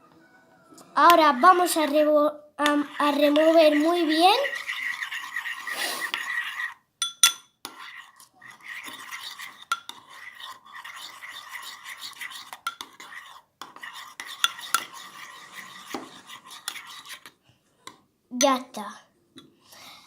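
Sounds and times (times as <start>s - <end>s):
spoon scraping in slime: 2.6s - 6.8s, 7.5s - 17.4s.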